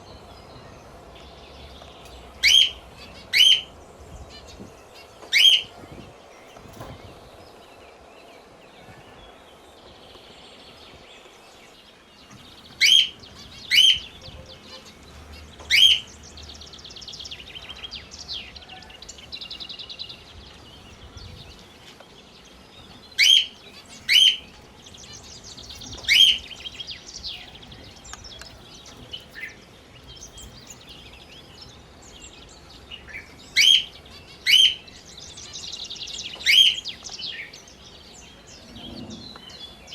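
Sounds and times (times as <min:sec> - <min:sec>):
soft bird chirping and warbling: 0:00.0 - 0:39.9.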